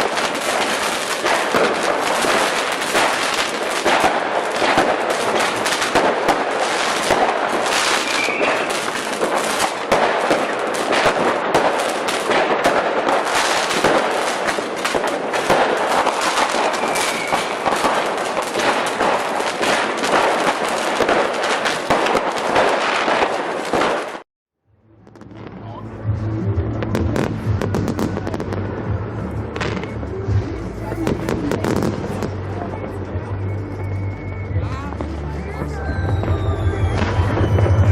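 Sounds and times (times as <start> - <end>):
fireworks crackling: 0.0 - 24.3, 25.0 - 37.9
faint firework whistles: 7.6 - 9.6, 16.2 - 17.9, 33.4 - 37.9.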